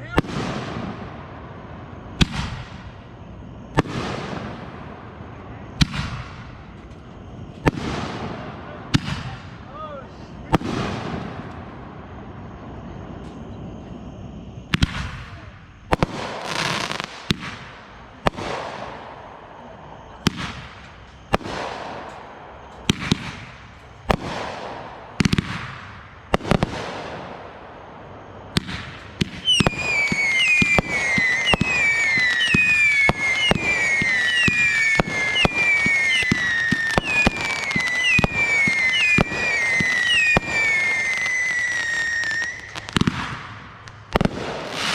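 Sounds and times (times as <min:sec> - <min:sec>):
firework bangs: 0:00.0 - 0:44.9
firework whistles falling in pitch: 0:12.4 - 0:19.2, 0:28.2 - 0:44.9.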